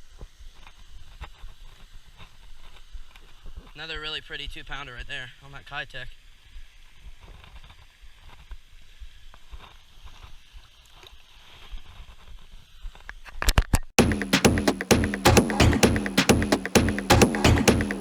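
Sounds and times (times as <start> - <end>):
electronic dance music: 14.0 - 18.0.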